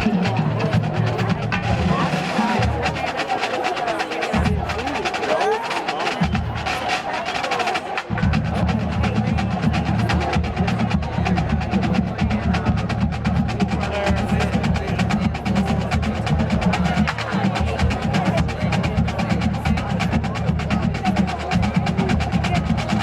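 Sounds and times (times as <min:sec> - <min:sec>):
bass drums: 0:00.0 - 0:03.1, 0:08.1 - 0:23.0
rapid snare drum strokes: 0:00.0 - 0:23.0.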